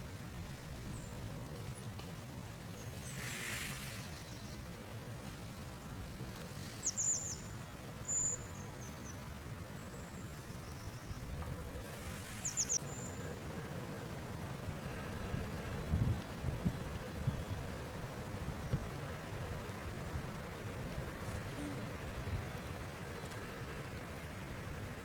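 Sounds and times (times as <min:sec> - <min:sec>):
low outdoor rumble: 0:00.0 - 0:25.0
songbird high chirps: 0:06.7 - 0:09.3, 0:12.2 - 0:13.3.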